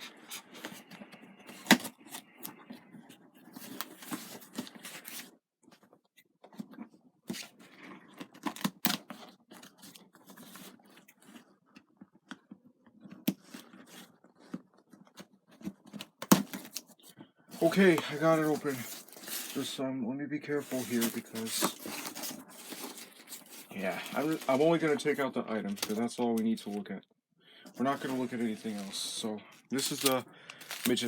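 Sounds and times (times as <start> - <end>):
packaging crinkling: 15.9 - 19.8, 20.5 - 26.1, 27.8 - 31.0
packaging tearing: 17.6 - 19.8, 20.6 - 25.1, 27.9 - 31.0.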